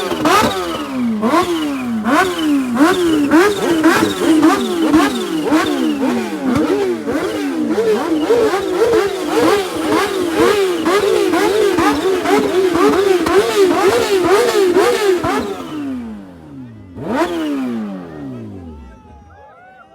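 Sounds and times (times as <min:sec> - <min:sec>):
motorcycle engine revving: 0:00.0 - 0:19.2.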